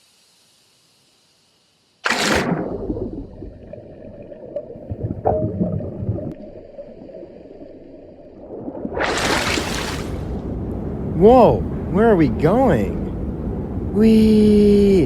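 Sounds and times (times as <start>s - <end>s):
water gurgling and churning: 2.0s - 10.6s.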